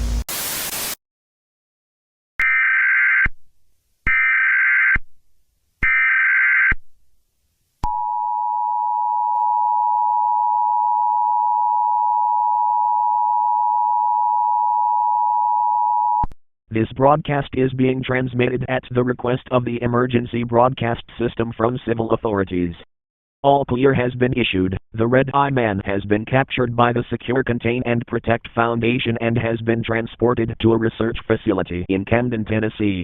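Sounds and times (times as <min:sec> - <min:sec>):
static hiss: 0:00.0 - 0:01.0.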